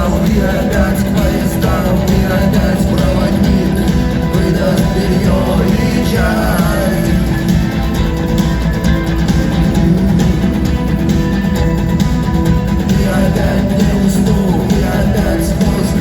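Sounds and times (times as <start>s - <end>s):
person singing: 0.0s - 8.0s, 12.6s - 16.0s
drum kit beat: 0.0s - 16.0s
electric guitar: 0.0s - 16.0s.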